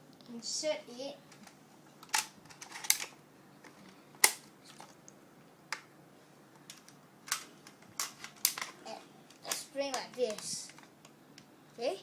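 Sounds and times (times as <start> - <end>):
plastic toy gun clicks and snaps: 2.1 - 3.1, 4.2 - 4.4, 7.3 - 8.7.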